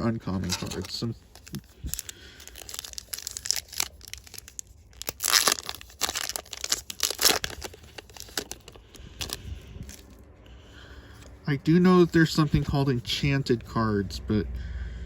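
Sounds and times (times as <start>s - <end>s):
foil wrapper tearing and crinkling: 0.3s - 10.2s.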